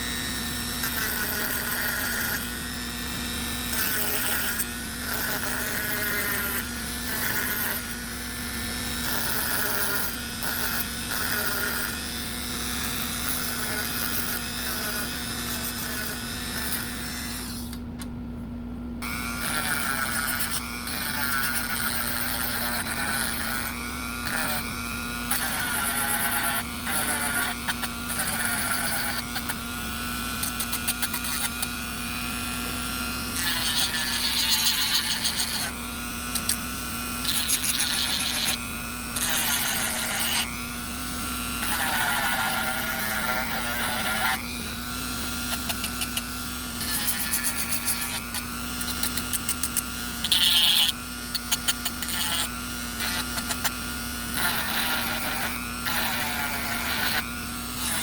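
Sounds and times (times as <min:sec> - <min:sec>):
rotary tool whine: 0:00.0 - 0:18.1, 0:19.0 - 0:58.0
scratchy sanding: 0:46.8 - 0:50.9.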